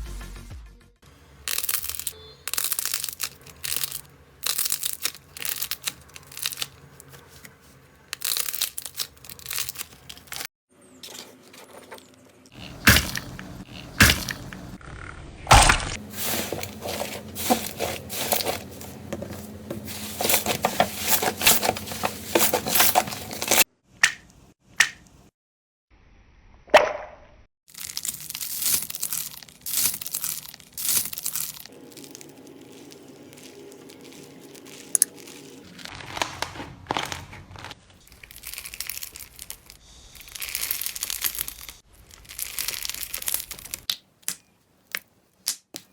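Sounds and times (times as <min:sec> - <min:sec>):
slime crackling and popping: 0:01.5 - 0:06.8, 0:08.2 - 0:10.5, 0:27.7 - 0:45.9.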